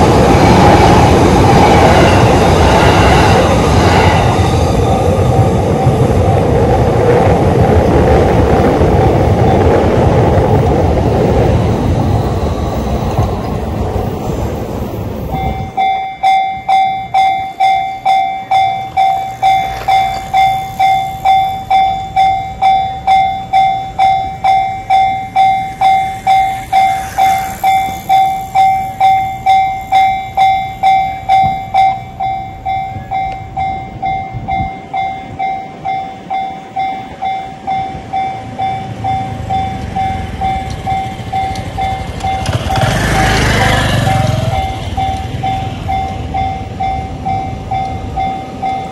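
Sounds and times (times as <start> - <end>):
train passing: 0.0 - 48.9
level-crossing warning bell: 9.2 - 9.8, 10.4 - 48.9.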